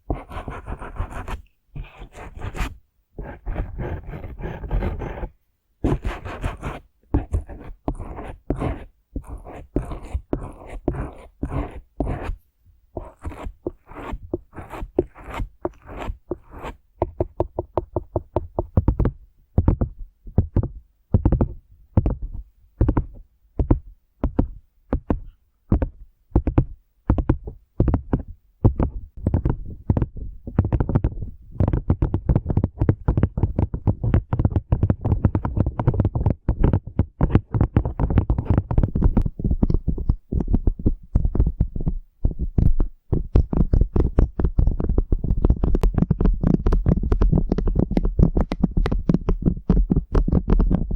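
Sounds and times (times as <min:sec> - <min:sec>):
scratchy brush strokes: 0:00.1 - 0:12.4, 0:13.0 - 0:16.8.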